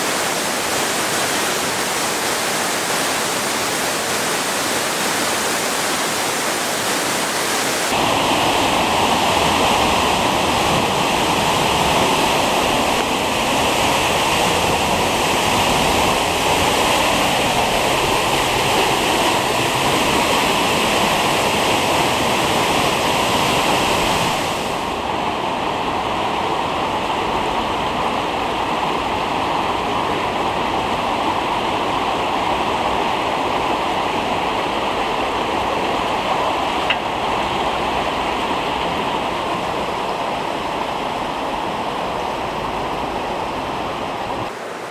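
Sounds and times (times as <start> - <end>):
flowing water rushing: 0.0 - 44.9.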